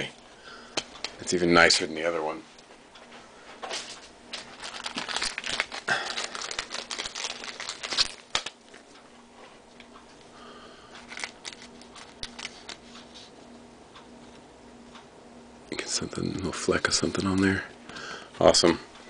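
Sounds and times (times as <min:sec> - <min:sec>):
plastic sleeve crinkling: 0:04.3 - 0:08.9, 0:11.0 - 0:13.0.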